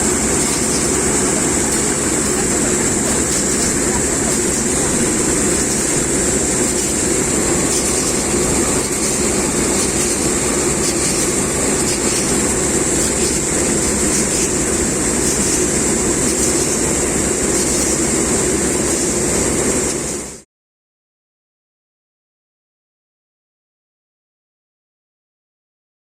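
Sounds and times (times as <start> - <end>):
combine harvester droning: 0.0 - 20.4.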